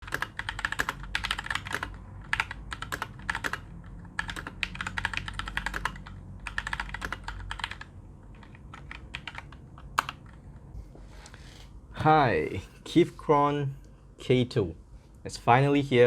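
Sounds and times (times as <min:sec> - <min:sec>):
mechanical keyboard typing: 0:00.0 - 0:10.4.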